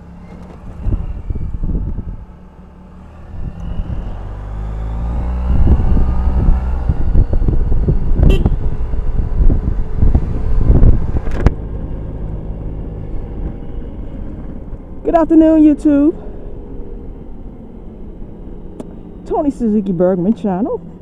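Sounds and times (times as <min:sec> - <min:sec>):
wind buffeting microphone: 0:00.5 - 0:02.4, 0:03.2 - 0:20.8
scooter engine running: 0:05.4 - 0:21.0.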